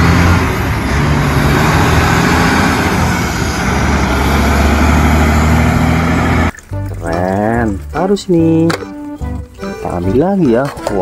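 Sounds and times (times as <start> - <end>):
loud rushing hiss: 0.0 - 6.4.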